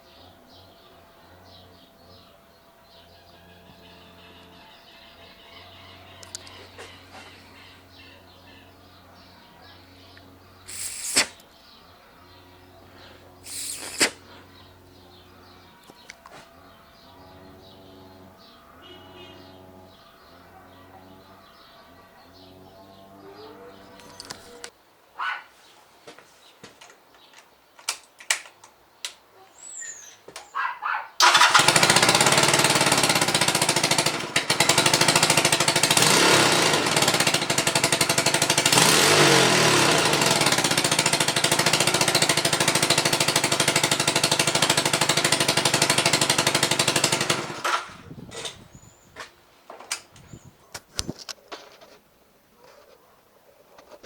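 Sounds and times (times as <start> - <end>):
motorcycle starter cranking rattle: 31.2 - 48.9.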